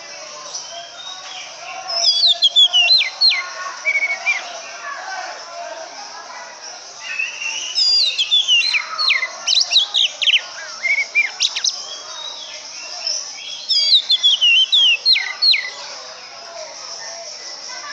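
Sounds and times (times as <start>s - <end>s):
bird singing whistled notes: 0.5s - 4.5s, 7.0s - 15.8s.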